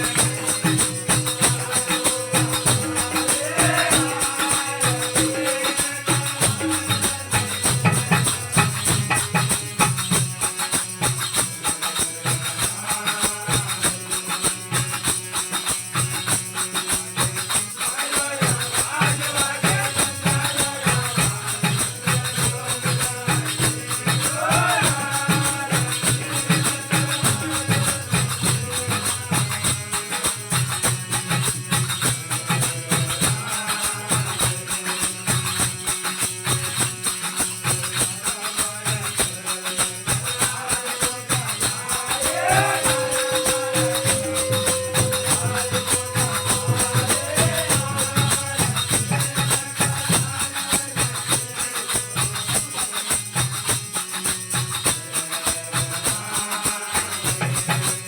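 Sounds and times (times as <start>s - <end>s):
devotional melody: 0.0s - 8.6s, 41.8s - 50.4s
jingling percussion: 0.0s - 58.0s
drum-like pulse: 41.3s - 50.4s.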